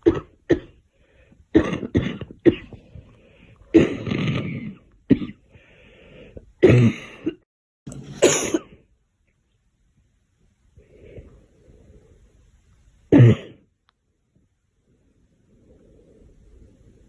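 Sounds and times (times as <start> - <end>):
girl coughing: 0.0 - 0.8, 1.6 - 2.8, 3.8 - 5.4, 6.6 - 7.4, 8.2 - 8.8, 13.1 - 13.6
faint breath drawn in: 15.0 - 17.0.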